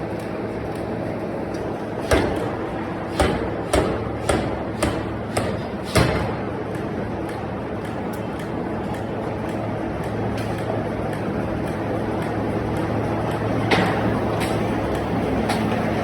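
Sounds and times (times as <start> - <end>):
steady machine hum: 0.0 - 16.0.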